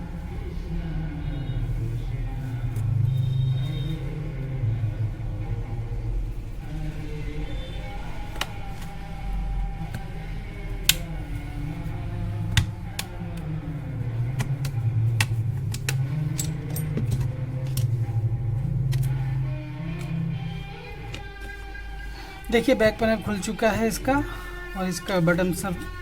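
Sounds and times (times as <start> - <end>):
low steady hum: 0.0 - 26.0
plastic clips snapping: 8.1 - 9.0, 9.8 - 13.5, 14.1 - 18.1, 18.8 - 21.6.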